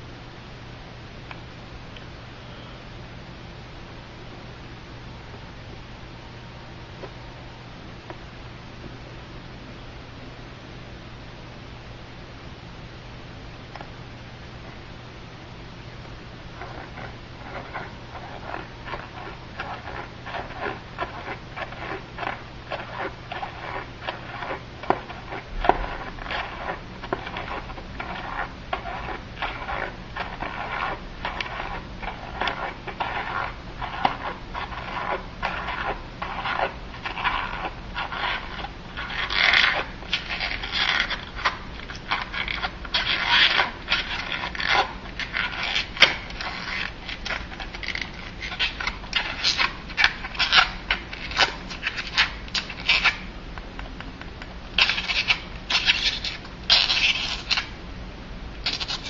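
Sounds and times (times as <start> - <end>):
balloon rubbing squeaks: 16.6 - 53.3, 54.8 - 57.7, 58.6 - 59.0.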